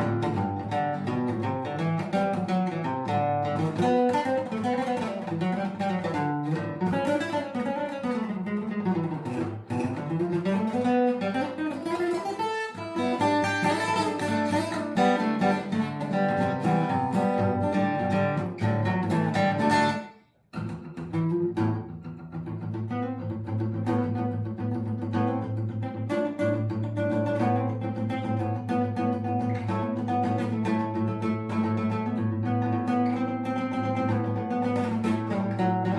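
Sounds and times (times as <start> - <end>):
acoustic guitar strummed and picked: 0.0 - 35.9.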